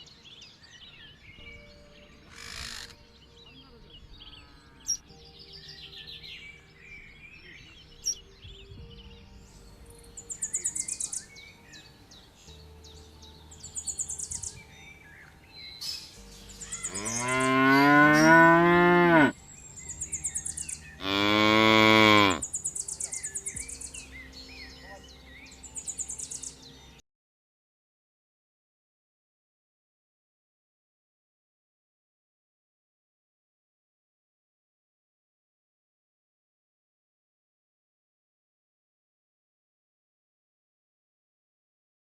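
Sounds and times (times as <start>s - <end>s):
cow mooing: 16.9s - 19.4s, 21.0s - 22.4s.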